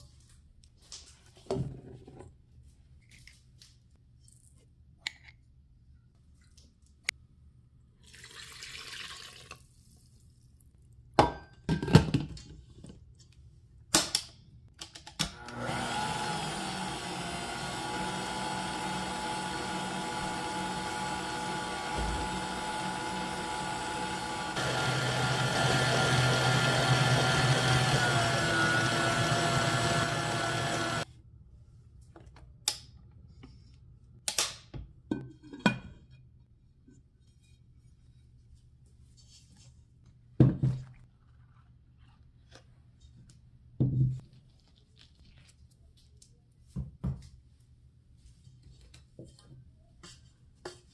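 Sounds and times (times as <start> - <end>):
electric kitchen mixer motor: 15.2 - 31.0.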